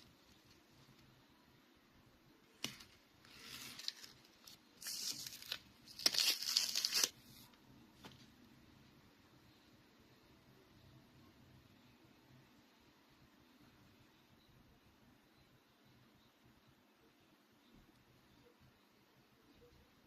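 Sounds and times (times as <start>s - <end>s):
packaging torn and crinkled: 2.6s - 7.2s.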